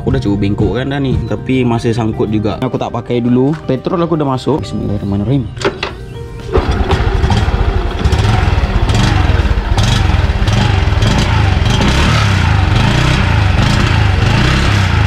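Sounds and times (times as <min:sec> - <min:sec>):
motorcycle engine revving: 0:06.4 - 0:15.0.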